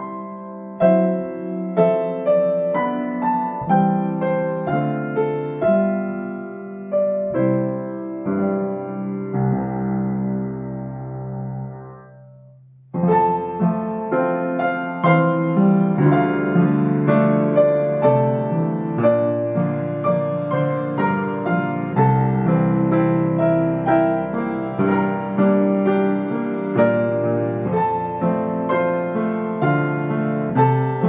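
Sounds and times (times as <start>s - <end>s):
piano playing: 0.0s - 31.0s.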